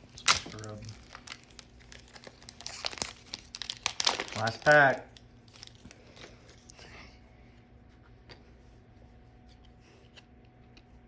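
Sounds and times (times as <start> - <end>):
trading cards rustling and clicking: 0.5 - 5.0.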